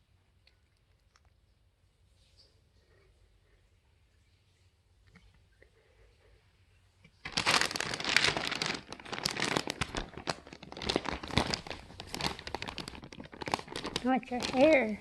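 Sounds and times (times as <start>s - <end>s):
crinkling and rustling: 7.0s - 15.0s.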